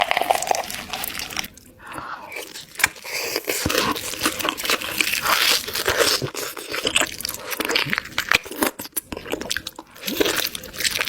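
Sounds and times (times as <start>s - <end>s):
chewing crispy fried chicken: 0.0s - 11.0s.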